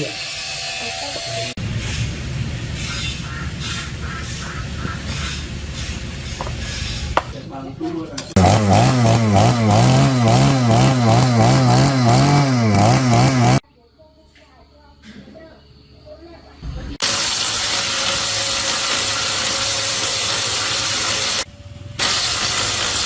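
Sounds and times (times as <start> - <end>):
chainsaw cutting wood: 5.2 - 7.4, 8.3 - 13.6, 17.0 - 23.0.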